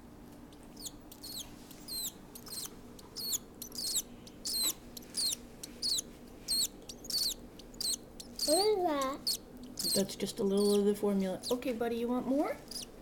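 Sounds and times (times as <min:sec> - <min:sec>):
bird chick squeaky begging calls: 0:00.8 - 0:10.8, 0:12.7 - 0:12.9.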